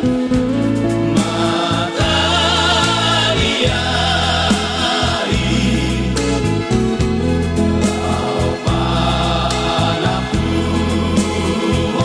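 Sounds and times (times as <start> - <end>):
steady bass line: 0.0 - 12.0
choir singing gospel: 1.0 - 12.0.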